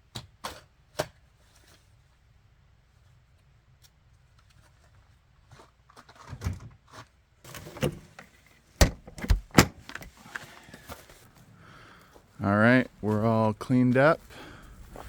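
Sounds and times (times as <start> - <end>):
camp gear clunking: 7.4 - 15.0.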